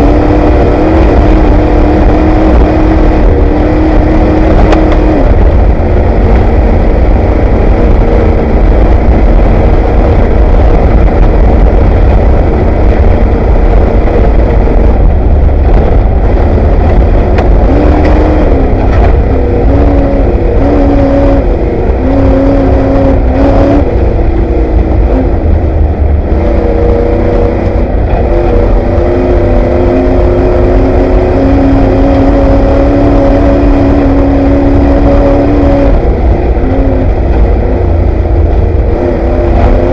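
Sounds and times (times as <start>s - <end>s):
truck engine revving: 0.0s - 39.9s.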